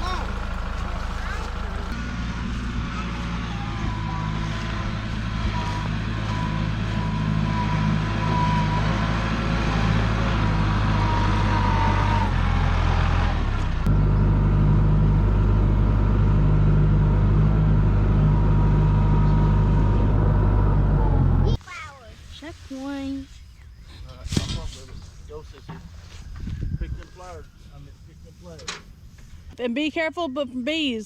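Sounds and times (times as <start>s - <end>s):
tractor engine running: 0.0s - 21.6s.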